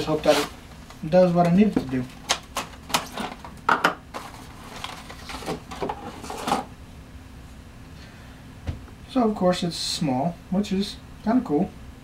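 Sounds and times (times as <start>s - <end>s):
packaging rustling: 0.0s - 6.7s.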